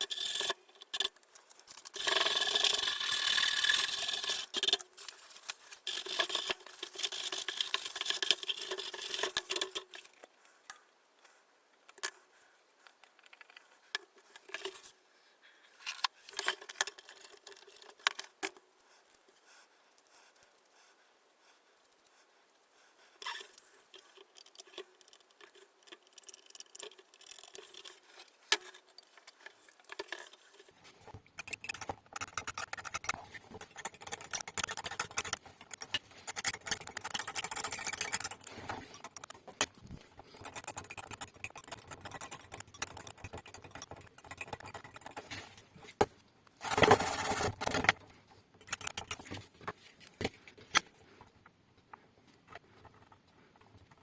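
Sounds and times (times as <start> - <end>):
small objects clicking and scraping: 0.0 - 10.8, 12.8 - 15.0, 15.7 - 19.2, 23.2 - 50.9.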